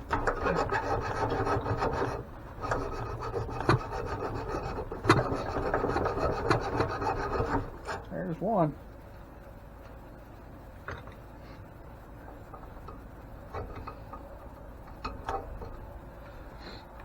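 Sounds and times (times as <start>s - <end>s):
harsh rasping and scraping: 0.2s - 8.1s.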